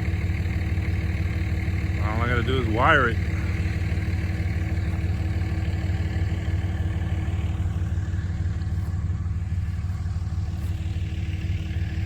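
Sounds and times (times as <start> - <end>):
vehicle engine running: 0.0 - 12.0.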